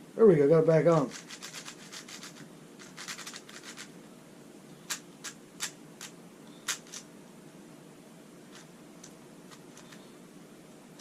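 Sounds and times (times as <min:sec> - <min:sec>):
speed cube clicking turns: 0:01.1 - 0:03.9, 0:04.9 - 0:07.1, 0:08.5 - 0:10.0
speed cube sharp clacks: 0:01.1 - 0:03.9, 0:04.9 - 0:07.1.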